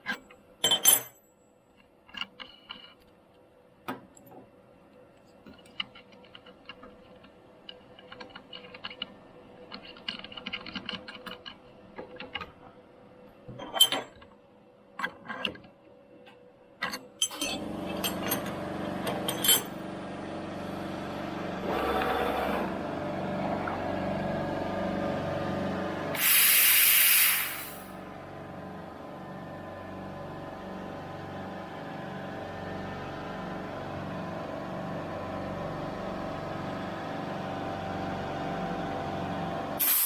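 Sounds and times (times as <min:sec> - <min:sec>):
machine motor running: 0:17.6 - 0:40.0.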